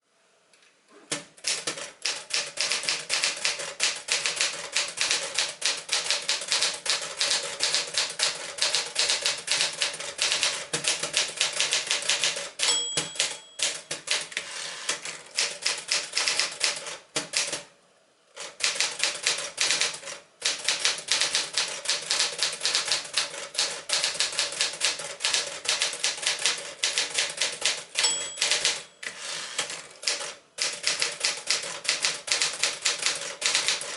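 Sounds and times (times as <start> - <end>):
typewriter keys clacking: 1.1 - 14.4, 18.4 - 33.9
typewriter margin bell ringing: 12.6 - 13.9, 28.0 - 29.6.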